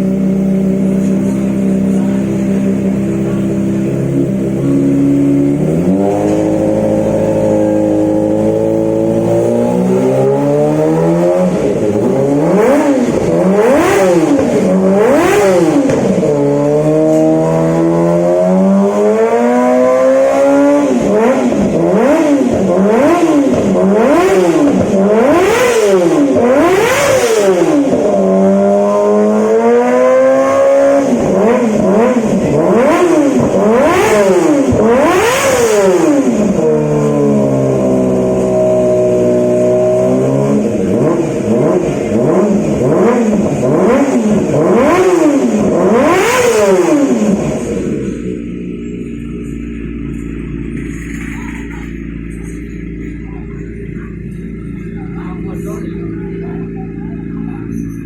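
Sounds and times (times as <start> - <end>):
motorcycle engine revving hard: 0.0 - 58.0
exhaust pops and crackles: 13.0 - 16.4, 48.4 - 57.7.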